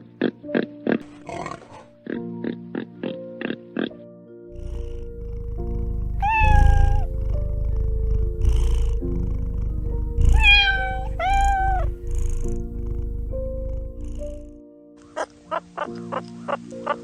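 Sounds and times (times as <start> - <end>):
background music: 0.0 - 17.0
low rumble: 4.6 - 14.6
cat meowing: 6.2 - 7.2, 10.1 - 12.5.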